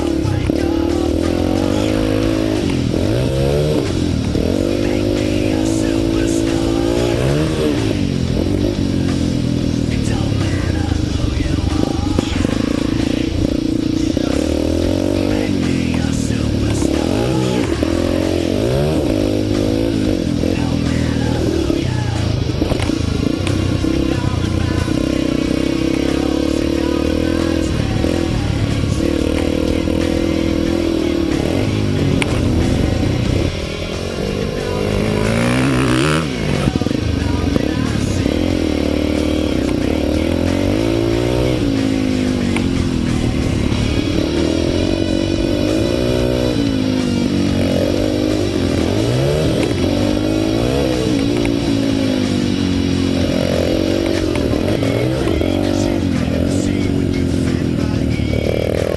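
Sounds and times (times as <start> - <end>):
dirt bike engine revving: 0.0 - 58.9.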